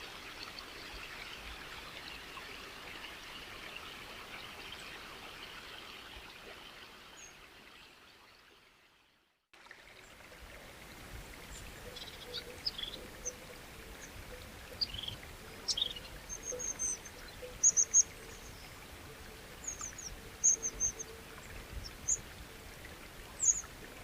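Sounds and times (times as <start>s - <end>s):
flowing water rushing: 0.0s - 8.9s, 9.6s - 24.0s
small birds chirping: 11.5s - 13.4s, 14.0s - 18.8s, 19.6s - 21.1s, 23.3s - 23.7s.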